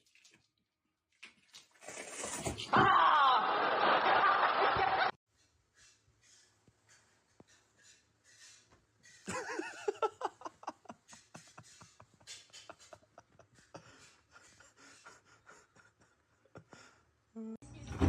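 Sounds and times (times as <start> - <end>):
person laughing hard: 9.3 - 17.0.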